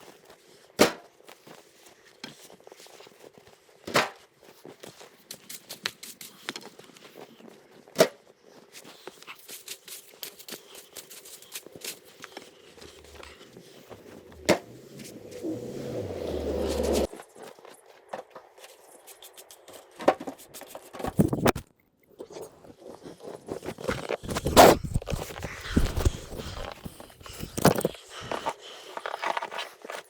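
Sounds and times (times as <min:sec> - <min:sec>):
small clicks scrapes and rustles: 0:04.5 - 0:07.9, 0:08.5 - 0:15.4, 0:16.7 - 0:30.0.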